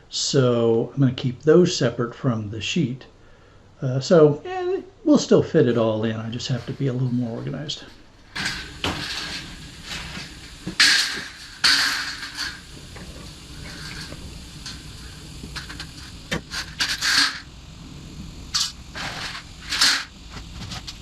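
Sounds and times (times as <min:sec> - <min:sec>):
sheet metal scraping and rattling: 0:06.3 - 0:17.6, 0:18.5 - 0:21.0.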